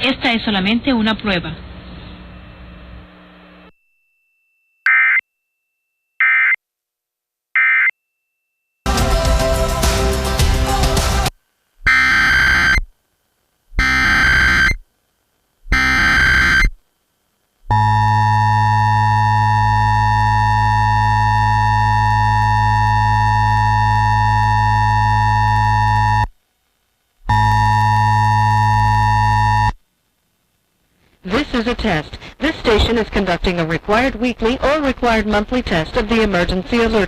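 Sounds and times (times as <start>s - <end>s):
electronic attention tone: 11.8s - 12.9s, 13.8s - 14.8s, 15.7s - 16.8s
digital header tone bursts: 11.9s - 12.9s, 13.8s - 14.8s, 15.7s - 16.8s.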